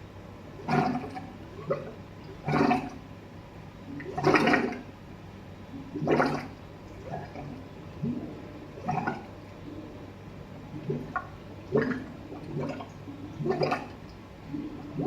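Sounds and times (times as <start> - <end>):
steady low hum: 0.0 - 15.0
plumbing gurgling: 0.6 - 3.0, 3.9 - 4.9, 5.8 - 9.4, 10.6 - 15.0.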